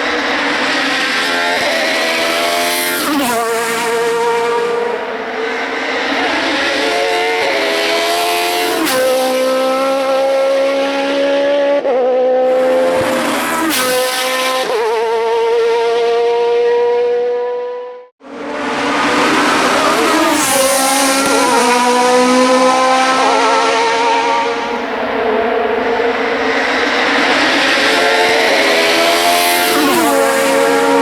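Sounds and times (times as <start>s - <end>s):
racing car engine revving: 0.0s - 31.0s.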